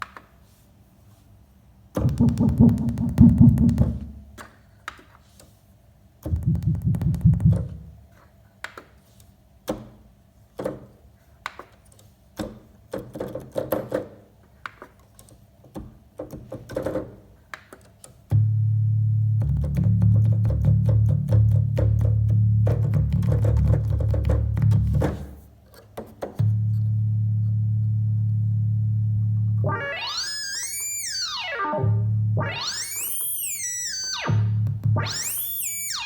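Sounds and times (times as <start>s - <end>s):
steady low synthesizer drone: 6.3s - 8.0s, 26.7s - 36.0s
low buzzing synthesizer bursts: 28.5s - 36.0s
short clicky synthesizer notes: 29.6s - 36.0s.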